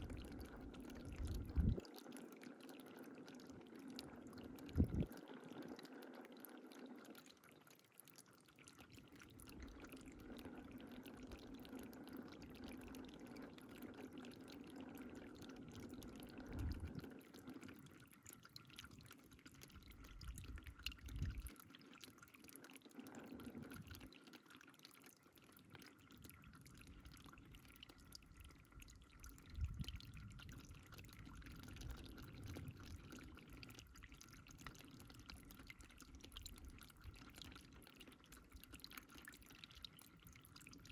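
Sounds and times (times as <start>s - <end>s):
water pouring and dripping: 0.0s - 40.9s.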